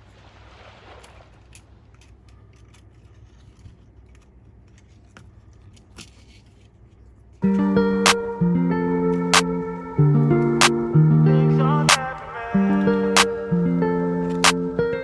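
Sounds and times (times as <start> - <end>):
low steady hum: 0.0 - 15.0
plucked guitar music: 7.4 - 15.0.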